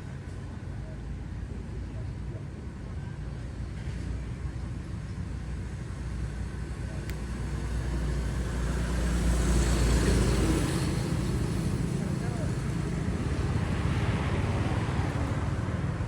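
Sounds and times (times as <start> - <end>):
faint click: 7.0 - 7.3.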